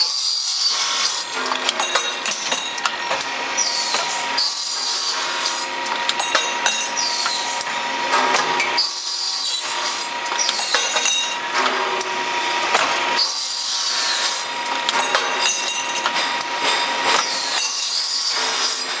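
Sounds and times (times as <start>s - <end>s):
saw cutting: 0.0s - 1.5s, 2.4s - 5.9s, 6.8s - 19.0s.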